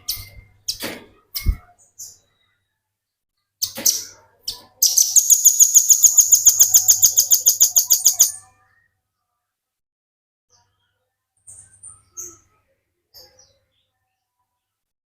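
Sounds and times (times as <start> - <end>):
bird calling and trilling: 4.8 - 8.6.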